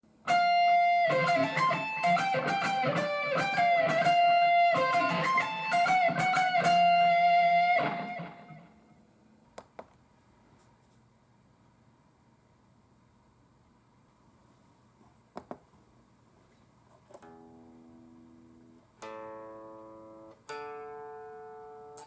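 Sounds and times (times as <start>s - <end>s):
electric guitar lead line: 0.3s - 8.8s.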